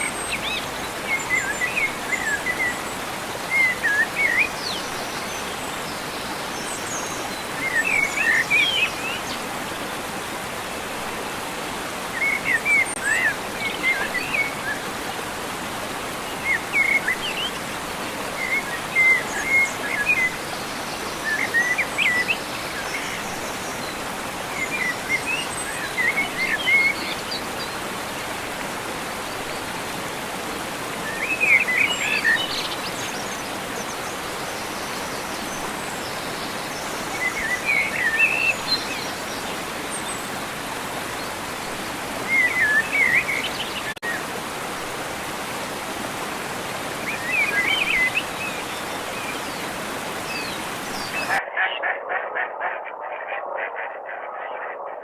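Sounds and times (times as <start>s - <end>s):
steady rushing noise: 49.7s - 55.0s.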